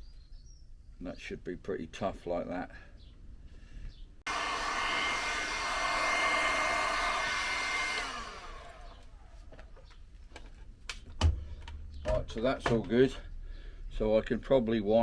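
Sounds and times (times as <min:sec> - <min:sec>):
heat gun blowing with motor whine: 0:04.3 - 0:09.5.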